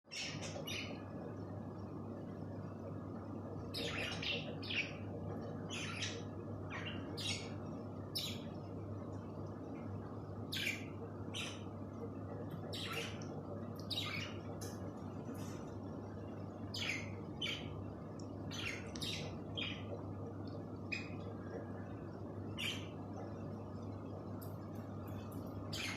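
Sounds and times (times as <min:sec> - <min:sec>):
pet birds chirping: 0:00.1 - 0:01.2, 0:03.6 - 0:08.6, 0:10.5 - 0:11.8, 0:12.5 - 0:15.6, 0:16.5 - 0:20.0, 0:20.8 - 0:21.4, 0:22.5 - 0:23.4, 0:25.0 - 0:25.9
low hum: 0:00.1 - 0:25.9.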